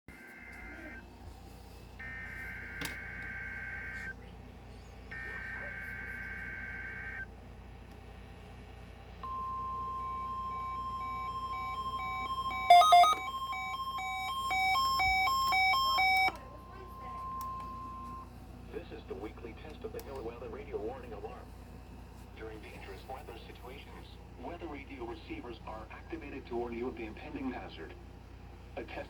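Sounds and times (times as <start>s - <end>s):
steady warning alarm tone: 2.0s - 4.2s, 5.1s - 7.3s, 9.2s - 18.3s
warbling digital data tones: 9.2s - 16.4s
pulsing short beeps: 9.2s - 18.2s.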